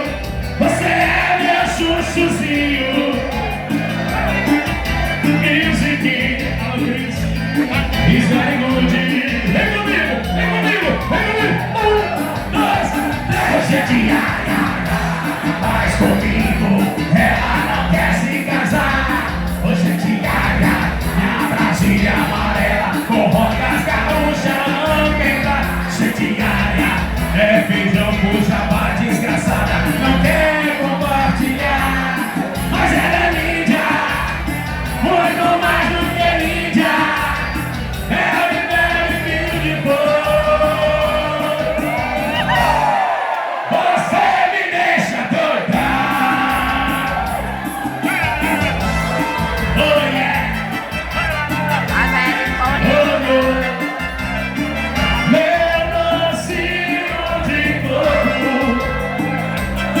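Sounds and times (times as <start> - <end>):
upbeat instrumental band music: 0.0 - 60.0.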